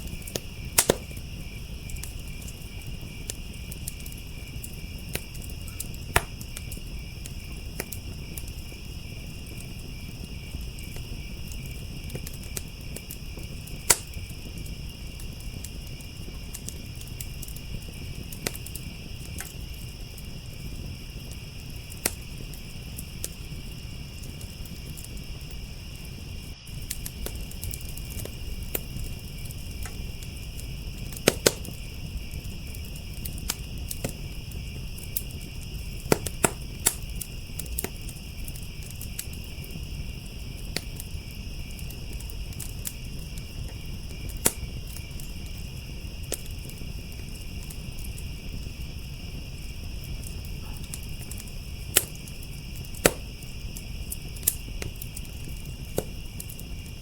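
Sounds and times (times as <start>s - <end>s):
crickets chirring: 0.0s - 57.0s
low rumble of flames: 0.0s - 57.0s
wood fire crackling and popping: 0.0s - 57.0s.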